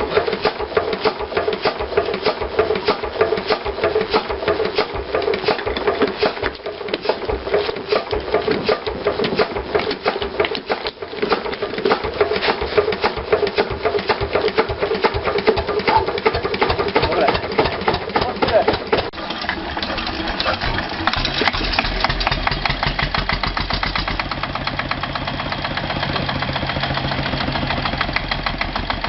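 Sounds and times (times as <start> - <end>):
small diesel engine clattering: 0.0 - 29.0.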